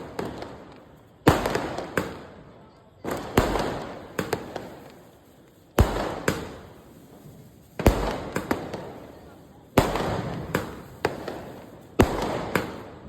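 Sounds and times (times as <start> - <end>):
firework bangs: 0.0 - 13.0
firework cracks: 0.0 - 13.0.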